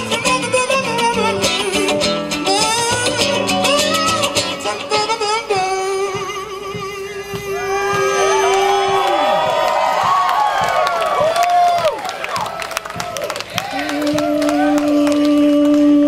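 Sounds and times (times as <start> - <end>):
guitar music with singing: 0.0 - 9.6, 13.6 - 16.0.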